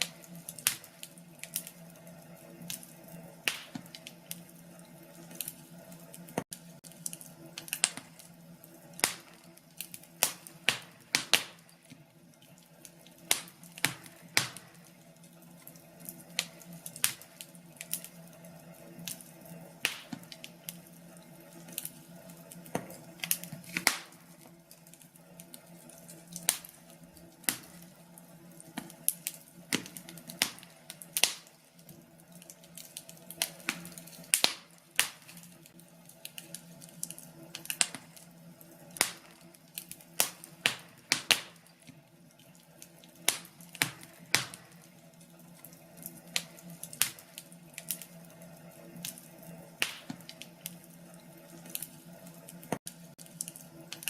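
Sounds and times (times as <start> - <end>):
sharp pops and snaps: 0.0 - 1.8, 3.4 - 4.4, 6.2 - 8.3, 9.0 - 11.8, 12.8 - 14.8, 19.8 - 20.5, 22.7 - 24.2, 27.4 - 27.9, 28.7 - 31.6, 32.4 - 38.3, 39.0 - 42.0, 43.2 - 44.8, 46.3 - 48.1, 49.8 - 50.8
low rush of flames: 0.0 - 54.0
wood fire crackling: 0.0 - 54.0.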